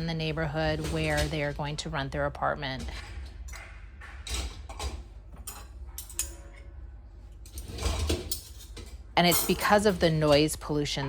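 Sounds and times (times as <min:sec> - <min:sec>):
mechanical clanks and rattles: 0:02.6 - 0:06.8, 0:07.4 - 0:10.5.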